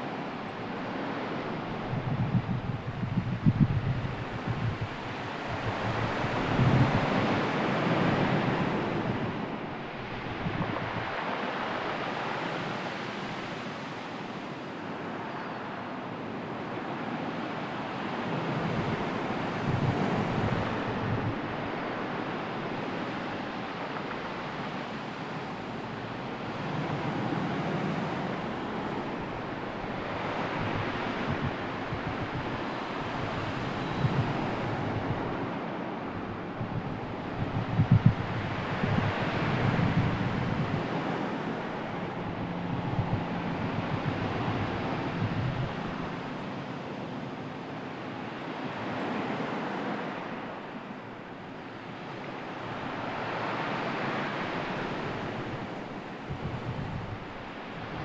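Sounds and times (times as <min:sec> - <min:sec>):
sea waves washing in: 0:00.0 - 0:58.0
wind on microphone: 0:00.1 - 0:13.6, 0:18.2 - 0:24.8, 0:26.4 - 0:46.5, 0:52.0 - 0:58.0.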